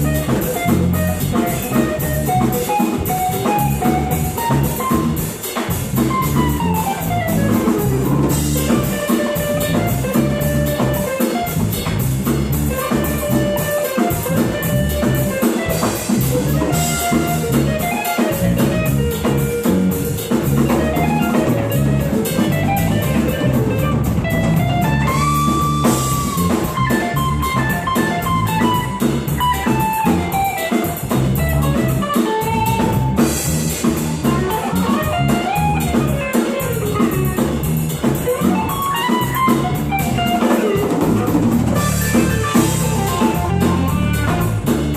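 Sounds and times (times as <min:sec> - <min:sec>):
drum kit: 0:00.0 - 0:44.9
electric guitar lines: 0:00.0 - 0:44.9.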